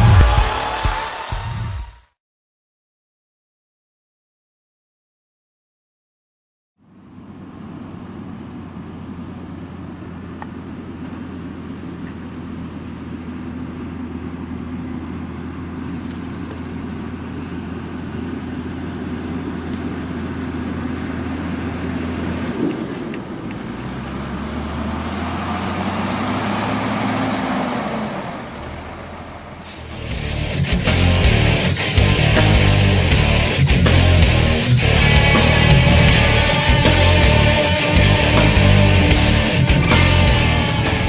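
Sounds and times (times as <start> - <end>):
rushing noise: 0.0 - 2.0, 29.6 - 41.0
tractor engine running: 6.8 - 41.0.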